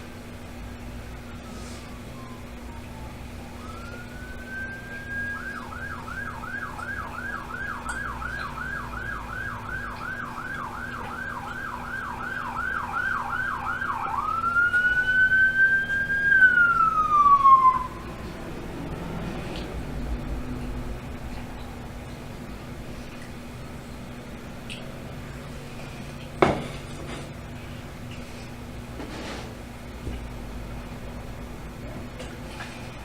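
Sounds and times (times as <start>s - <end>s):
emergency vehicle siren: 0.3s - 22.4s.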